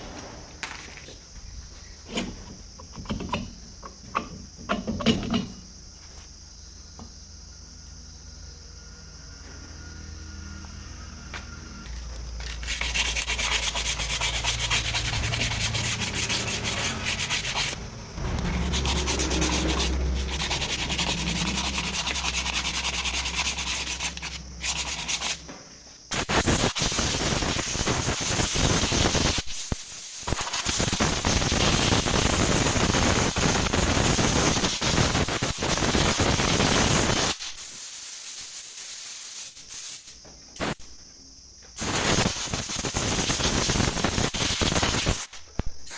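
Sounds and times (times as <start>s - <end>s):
abrasive sanding on metal: 12.4s - 25.4s.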